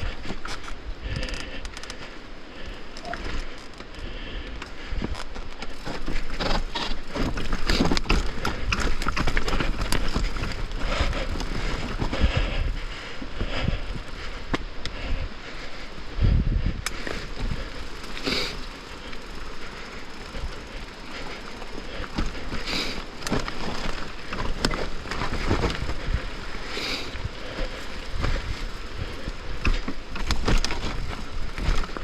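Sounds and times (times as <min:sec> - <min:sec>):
bike rattling and clattering: 0:00.0 - 0:32.0
bike tyres crunching on dirt: 0:00.0 - 0:32.0
wind on microphone: 0:06.4 - 0:17.9.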